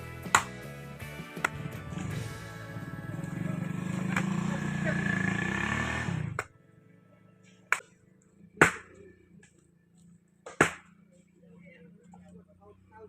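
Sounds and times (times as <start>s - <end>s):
background music: 0.0s - 9.4s.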